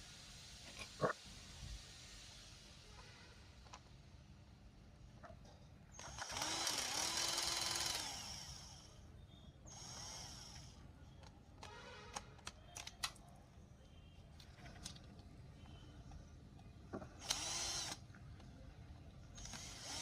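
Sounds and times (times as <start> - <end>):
small electric motor running: 6.0 - 8.9, 9.7 - 10.8, 17.2 - 18.0, 19.4 - 20.0.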